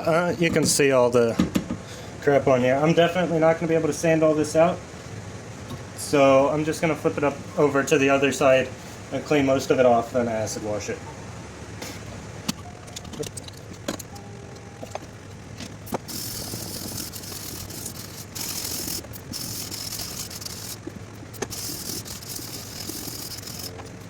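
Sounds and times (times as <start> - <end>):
sandpaper scraping metal blade: 15.9 - 24.0.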